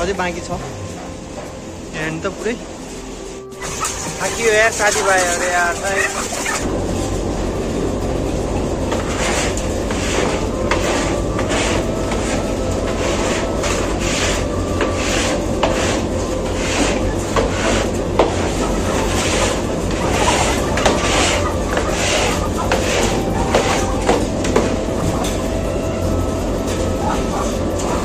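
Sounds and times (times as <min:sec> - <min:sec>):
machinery hum: 0:00.0 - 0:28.0
scraping strokes on floor: 0:02.8 - 0:06.7, 0:08.8 - 0:28.0.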